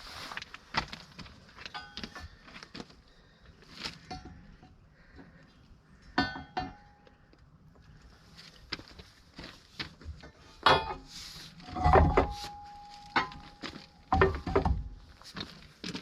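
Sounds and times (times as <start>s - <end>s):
metal clanks and knocks: 6.1s - 7.1s, 10.1s - 15.1s.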